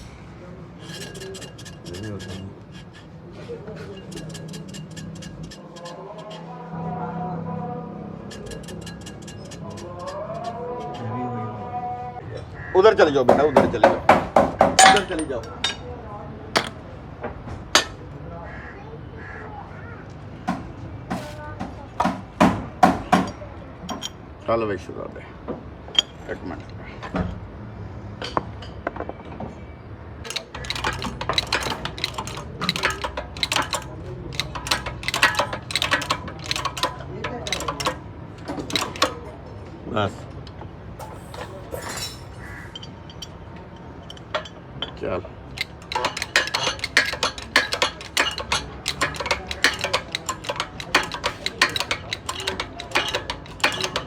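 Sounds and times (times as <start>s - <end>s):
hand tools clicking on metal: 0.8s - 6.5s, 8.2s - 11.0s, 13.3s - 15.8s, 16.6s - 16.8s, 17.7s - 18.0s, 30.3s - 39.4s, 40.4s - 54.0s.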